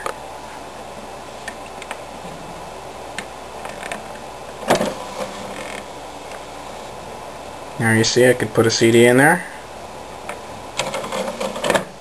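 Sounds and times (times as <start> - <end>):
mechanism clunk: 3.2 - 5.9, 10.2 - 12.0.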